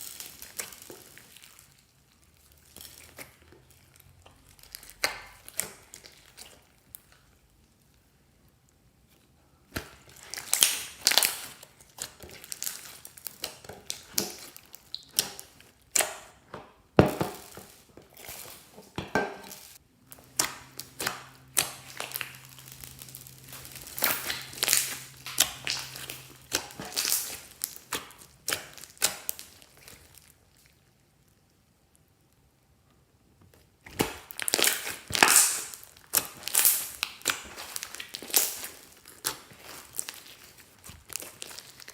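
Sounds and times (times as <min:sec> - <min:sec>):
slime squelching and crackling: 0:00.0 - 0:32.4, 0:33.5 - 0:41.9.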